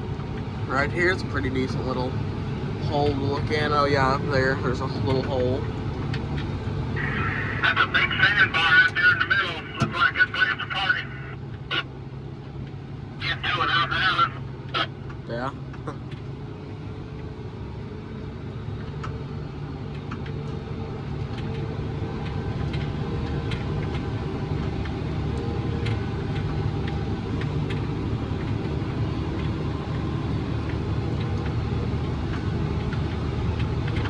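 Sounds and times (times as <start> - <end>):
tractor engine running: 0.0 - 34.0
light clicks and rattles: 21.2 - 34.0.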